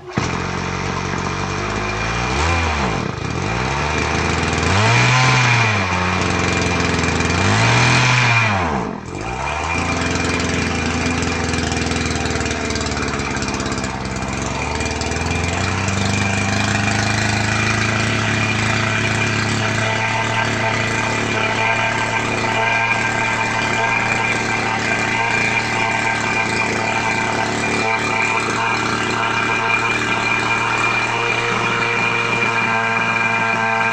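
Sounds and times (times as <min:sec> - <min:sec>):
small pump engine revving: 0:00.0 - 0:33.9.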